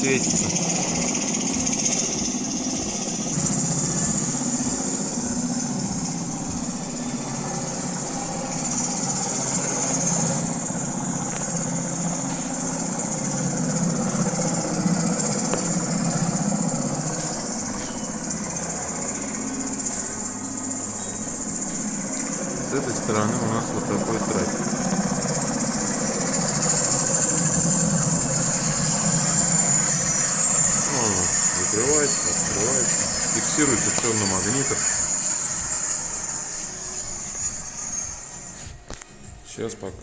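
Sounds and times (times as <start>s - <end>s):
helicopter sound through speaker: 0.0s - 40.0s.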